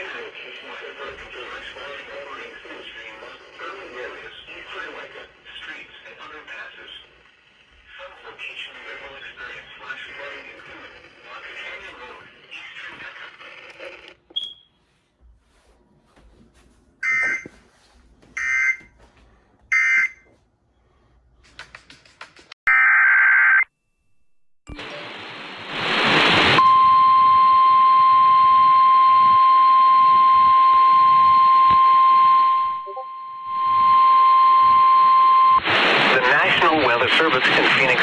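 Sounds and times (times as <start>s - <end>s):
radio static hiss: 0.0s - 14.3s, 24.8s - 26.6s, 35.6s - 38.0s
steady warning alarm tone: 17.0s - 17.5s, 18.4s - 19.0s, 19.7s - 20.3s.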